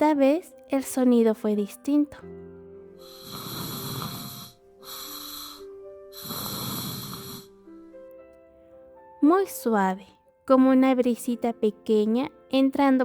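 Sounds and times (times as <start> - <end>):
quiet background music: 0.0 - 13.0
soft airy snores: 3.0 - 7.6.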